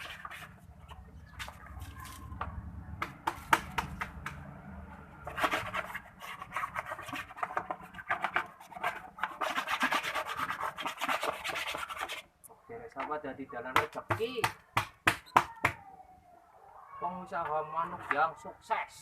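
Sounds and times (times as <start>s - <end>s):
cage being scrubbed and scraped: 0.0s - 2.3s, 5.2s - 12.3s.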